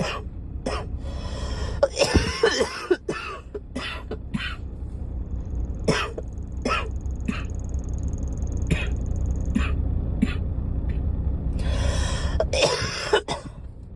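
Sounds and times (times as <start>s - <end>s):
steady low rumble: 0.0s - 13.9s
girl coughing: 1.8s - 4.6s, 12.4s - 13.5s
breathy rush: 11.6s - 12.5s.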